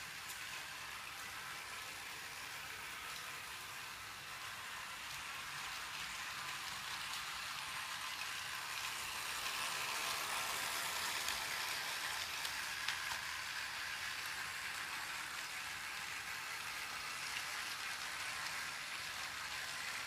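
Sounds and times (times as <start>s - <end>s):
toy train rattling: 0.0s - 20.0s.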